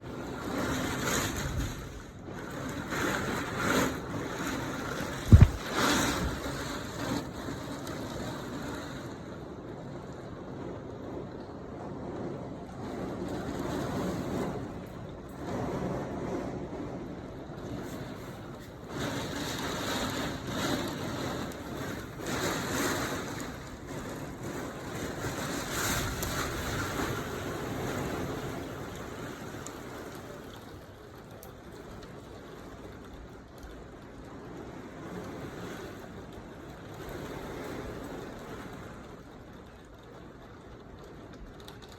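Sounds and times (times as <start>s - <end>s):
wind and rain gusts: 0.0s - 41.9s.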